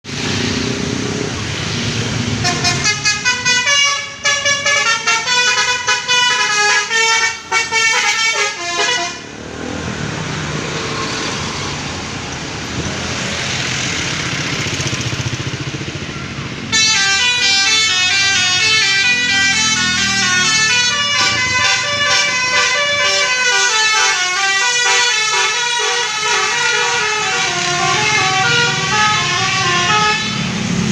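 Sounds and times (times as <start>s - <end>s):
multi-tone melody horns: 2.4s - 9.3s, 16.7s - 30.7s.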